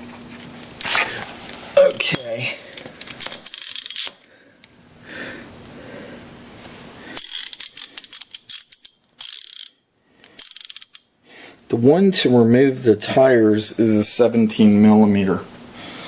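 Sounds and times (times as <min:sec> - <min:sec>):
ratchet wrench clicking: 0:03.0 - 0:04.3, 0:07.2 - 0:11.1.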